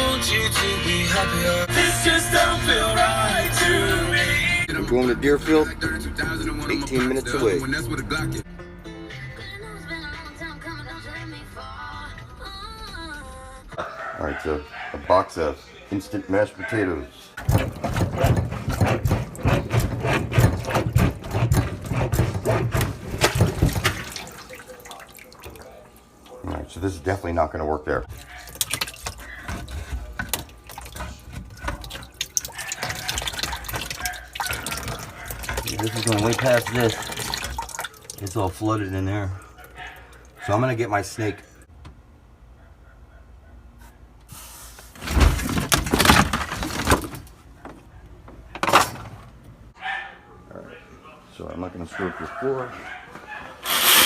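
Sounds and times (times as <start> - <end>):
knocks and thuds: 17.4 - 24.0.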